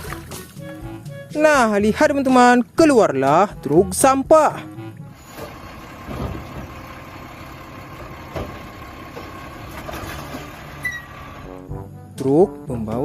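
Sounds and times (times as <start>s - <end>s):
garbage truck engine idling: 4.6s - 12.1s.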